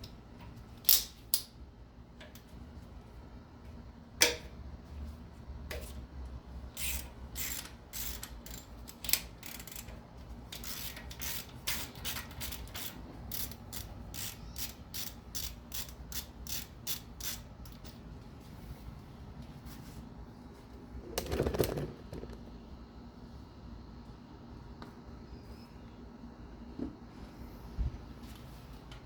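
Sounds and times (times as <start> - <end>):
ratchet wrench clicking: 0.8 - 1.5, 6.7 - 17.9.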